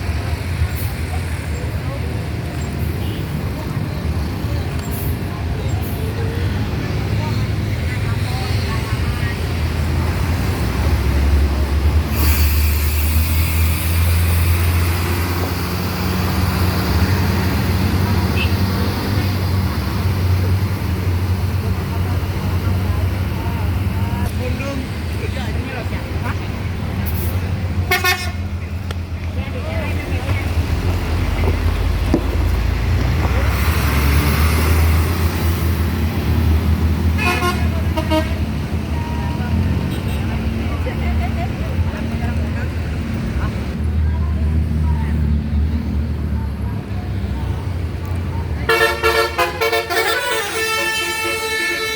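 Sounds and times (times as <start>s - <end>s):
vehicle engine rumbling: 0.0s - 51.9s
air hiss: 12.0s - 15.0s
multi-tone bus horn: 18.2s - 18.9s, 27.8s - 28.5s, 37.1s - 40.3s, 48.6s - 51.9s.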